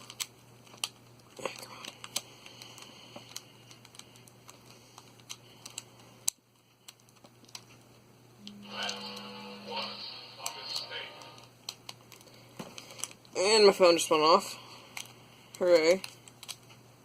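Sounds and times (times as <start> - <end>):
plastic puzzle pieces clicking: 0.0 - 7.7, 14.9 - 16.7
low hum: 8.4 - 11.7.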